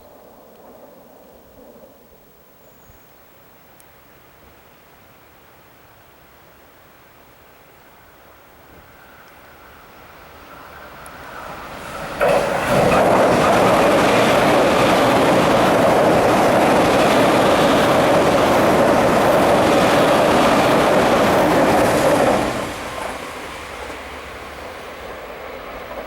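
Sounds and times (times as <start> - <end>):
electric train passing: 8.9 - 26.0.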